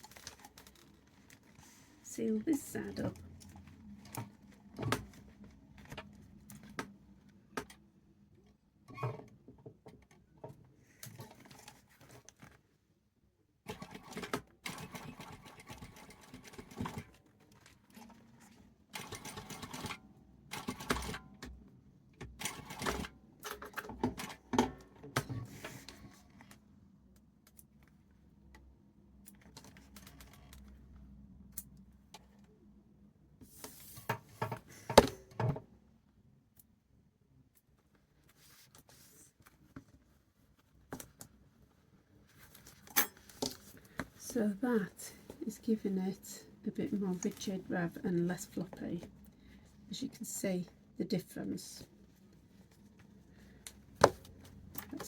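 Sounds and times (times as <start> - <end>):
sewing machine stitching: 13.7 - 17.2.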